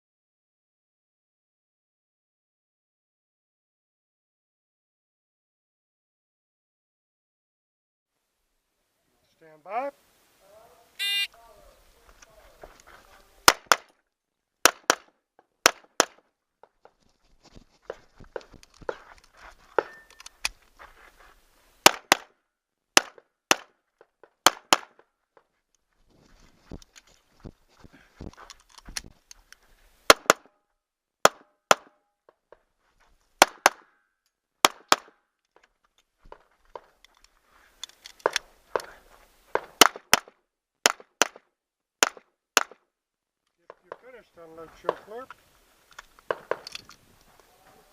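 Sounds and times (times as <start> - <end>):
soft knocks and shuffling: 16.6 - 19.9, 25.4 - 29.8.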